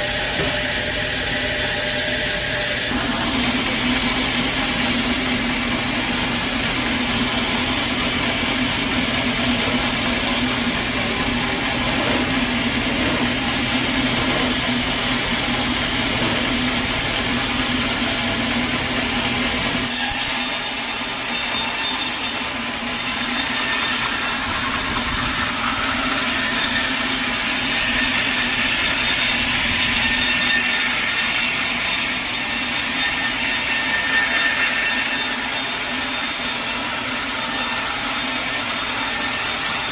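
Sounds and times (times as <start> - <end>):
low machine hum: 0.0 - 19.9
saw blade cutting log: 0.0 - 39.9.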